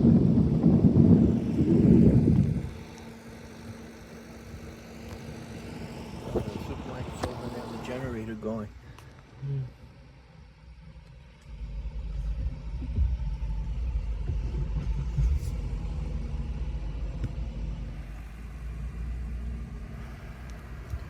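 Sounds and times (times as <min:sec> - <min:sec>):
vehicle driving rumble: 0:00.0 - 0:21.0.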